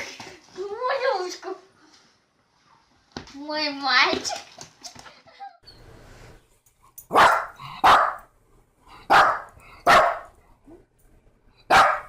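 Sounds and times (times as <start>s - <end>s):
dog barking: 7.1s - 8.3s, 9.1s - 10.3s, 11.7s - 12.0s.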